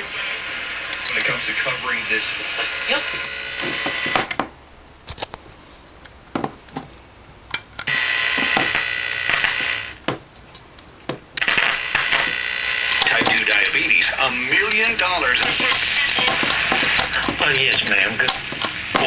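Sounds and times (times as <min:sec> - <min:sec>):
radio static: 0:00.0 - 0:04.3, 0:11.4 - 0:19.0.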